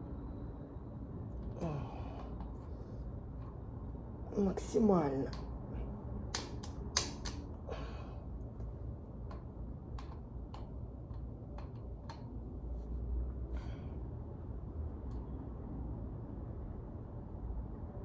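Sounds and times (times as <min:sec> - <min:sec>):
steady low rumble: 0:00.0 - 0:18.0
light clicks and taps: 0:08.6 - 0:12.3.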